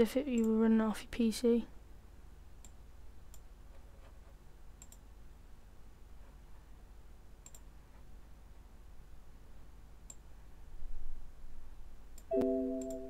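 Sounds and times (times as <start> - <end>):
low steady hum: 0.0 - 13.0
faint sharp clicks: 4.8 - 5.1, 7.4 - 7.7.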